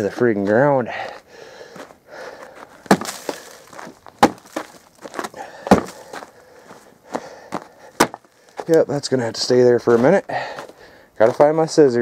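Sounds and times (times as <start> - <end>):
wood cracking and rustling: 2.6 - 6.3, 7.5 - 8.8
sharp wooden knocks: 2.8 - 6.2, 7.5 - 8.3.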